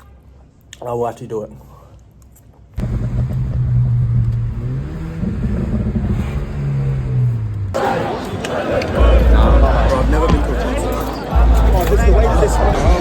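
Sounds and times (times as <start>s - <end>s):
vehicle engine revving: 2.8s - 7.8s.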